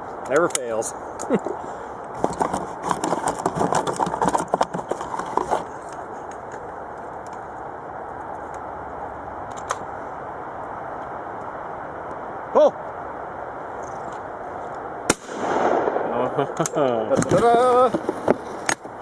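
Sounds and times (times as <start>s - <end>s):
outdoor background noise: 0.0s - 19.0s
objects clicking and rattling: 2.2s - 6.4s.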